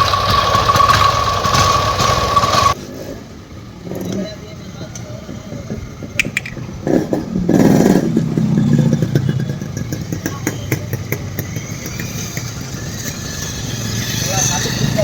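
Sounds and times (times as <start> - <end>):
engine ticking knocks: 0.0 - 2.8, 5.2 - 13.2
motorcycle engine idling: 0.0 - 2.8.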